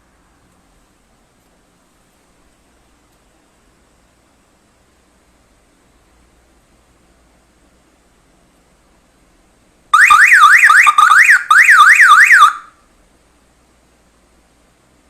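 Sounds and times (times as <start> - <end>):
electronic alarm siren wailing: 10.0 - 12.7.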